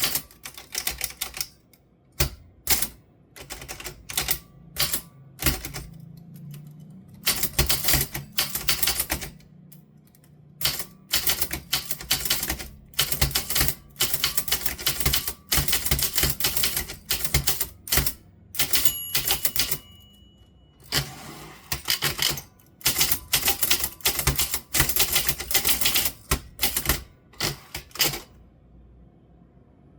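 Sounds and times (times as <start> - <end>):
typewriter key strikes: 0.0 - 1.6, 2.2 - 9.4, 10.6 - 19.9, 21.7 - 28.3.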